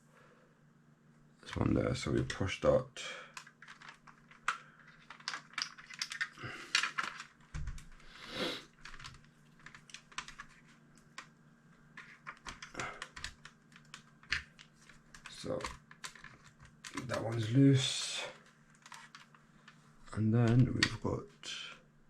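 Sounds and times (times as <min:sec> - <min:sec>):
small plastic clicks: 0:03.3 - 0:07.9, 0:12.0 - 0:17.3.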